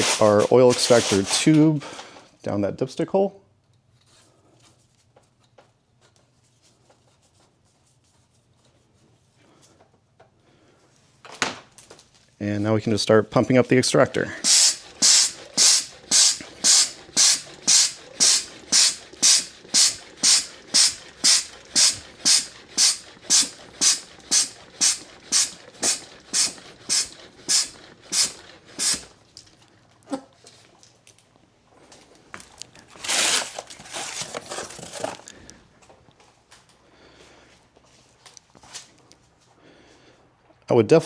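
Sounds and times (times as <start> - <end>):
hand pump air puffs: 0.0 - 2.1, 14.0 - 29.2
soft hissing rush: 14.2 - 29.1.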